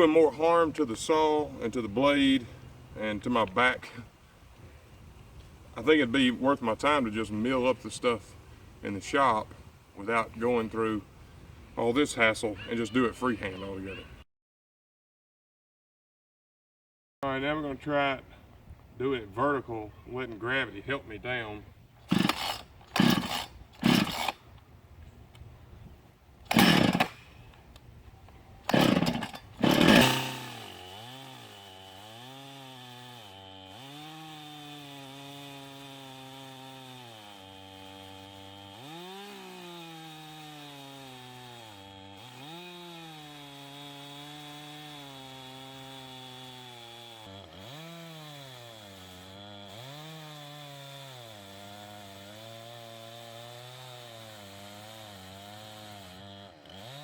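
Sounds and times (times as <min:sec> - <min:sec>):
chainsaw cutting log: 0:00.0 - 0:04.2, 0:18.9 - 0:25.5, 0:26.4 - 0:57.0
loud short noises: 0:22.1 - 0:24.4, 0:26.5 - 0:27.3, 0:28.6 - 0:30.7.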